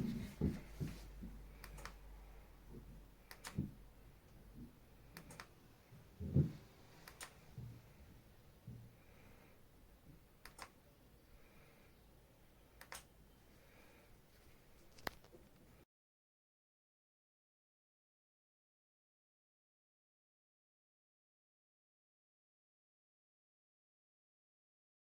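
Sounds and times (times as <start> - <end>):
soft low thumps: 0.0 - 1.5
faint clicks: 1.6 - 2.0, 5.1 - 5.5, 7.0 - 7.4, 10.4 - 10.8, 12.8 - 13.1.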